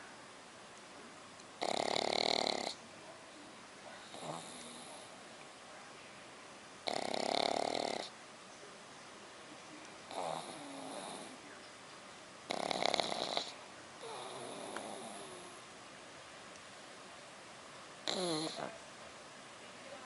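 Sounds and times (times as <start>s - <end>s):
puppy snoring: 1.6s - 2.8s, 4.0s - 5.1s, 6.8s - 8.2s, 10.1s - 11.4s, 12.5s - 15.7s, 18.0s - 18.8s.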